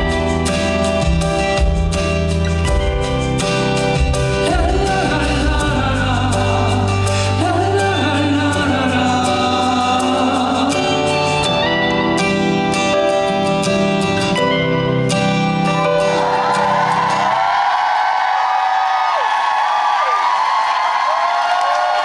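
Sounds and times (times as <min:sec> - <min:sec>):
person singing: 0:04.0 - 0:12.0.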